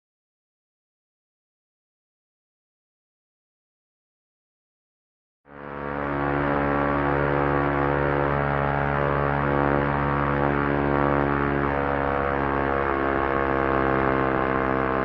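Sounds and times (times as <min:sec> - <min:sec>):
propeller aircraft engine running: 0:05.5 - 0:15.0.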